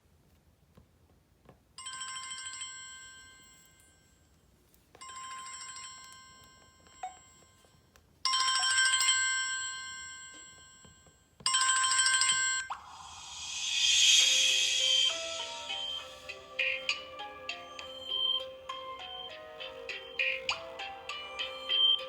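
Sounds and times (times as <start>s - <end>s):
trilling bell-like phone ring: 1.8s - 4.2s, 5.0s - 22.0s.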